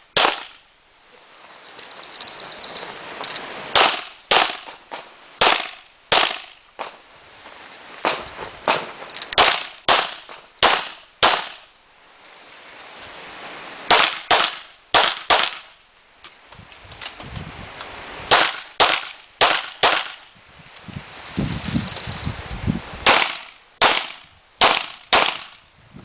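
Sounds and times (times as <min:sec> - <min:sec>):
gunshots: 0:00.2 - 0:00.6, 0:03.7 - 0:06.9, 0:08.0 - 0:11.6, 0:13.9 - 0:15.7, 0:18.3 - 0:20.2, 0:23.0 - 0:25.6.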